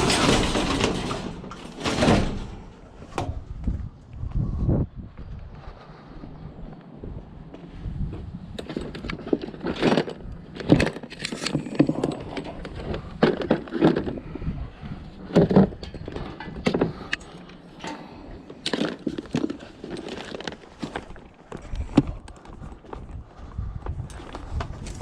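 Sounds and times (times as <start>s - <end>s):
scrap metal and plastic clattering: 0.0s - 3.3s, 8.6s - 22.6s.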